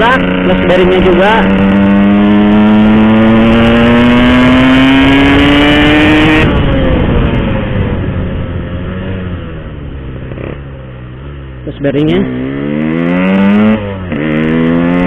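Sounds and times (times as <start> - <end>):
motorcycle engine accelerating: 0.0 - 15.0.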